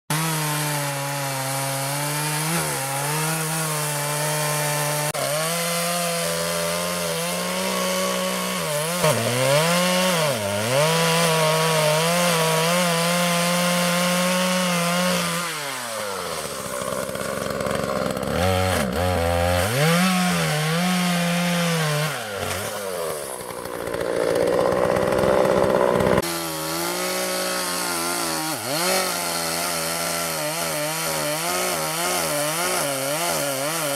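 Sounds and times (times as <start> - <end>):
chainsaw cutting tree trunk: 0.1 - 33.9.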